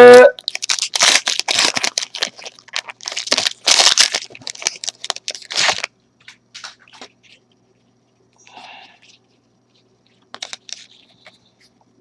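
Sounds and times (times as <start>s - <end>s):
wrapper tearing and crinkling: 0.4s - 5.9s, 10.3s - 11.3s.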